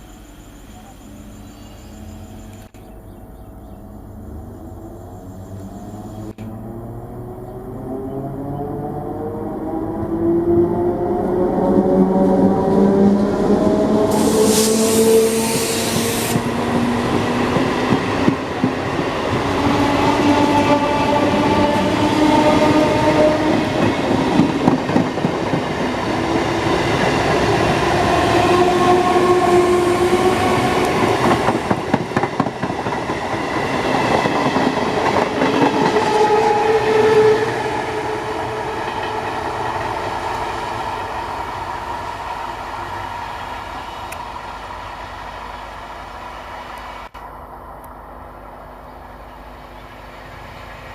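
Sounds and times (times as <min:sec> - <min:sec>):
train wheels rattling over rails: 0:11.6 - 0:45.7.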